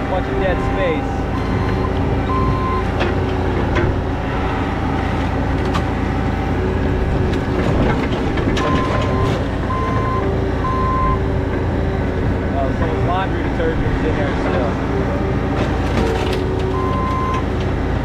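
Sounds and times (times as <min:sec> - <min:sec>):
diesel engine running under work: 0:00.0 - 0:18.0
reversing alarm beeps: 0:01.3 - 0:02.9, 0:08.6 - 0:11.2, 0:16.7 - 0:17.4.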